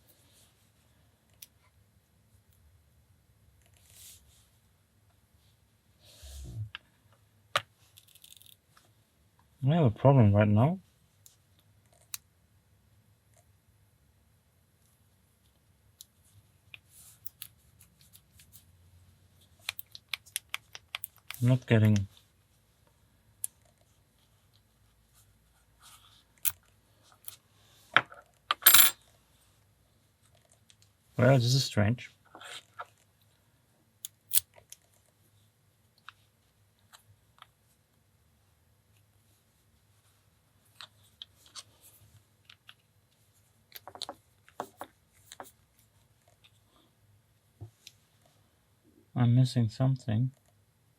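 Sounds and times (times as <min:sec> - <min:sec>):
lock and tools clicking: 0:34.1 - 0:34.4.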